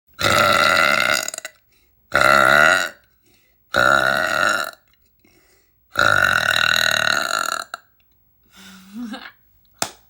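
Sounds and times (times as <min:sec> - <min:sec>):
woman burping loudly: 0:00.2 - 0:03.0, 0:03.7 - 0:04.8, 0:06.0 - 0:07.9.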